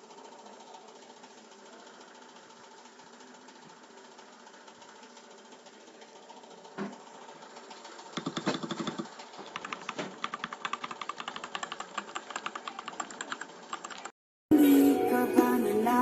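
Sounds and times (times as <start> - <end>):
music: 14.5 - 16.0.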